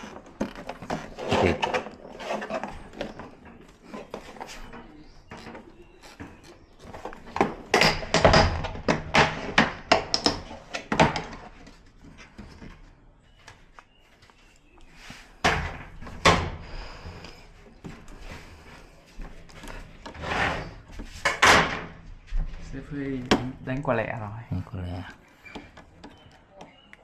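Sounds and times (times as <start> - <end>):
hard objects knocking and clacking: 0.0 - 11.5.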